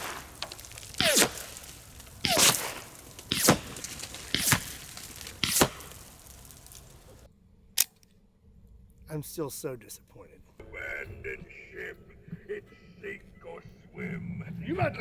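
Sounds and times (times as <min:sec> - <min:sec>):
bullet whizzing past: 0:00.0 - 0:07.3.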